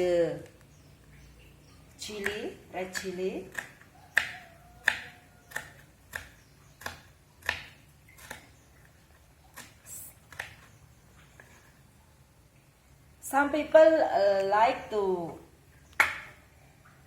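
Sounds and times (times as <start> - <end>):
knife tapping cutting board: 3.0 - 8.4.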